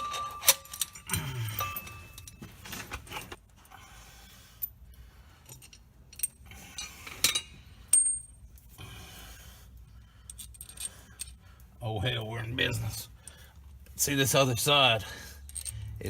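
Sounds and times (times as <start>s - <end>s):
metal clinking and scraping: 0.0s - 3.5s, 4.5s - 8.6s, 10.2s - 11.5s, 13.2s - 16.0s.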